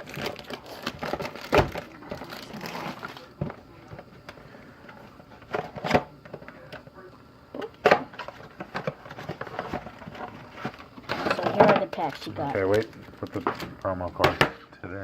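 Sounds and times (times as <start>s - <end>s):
rustling and crinkling packs: 0.0s - 3.4s, 8.2s - 14.2s.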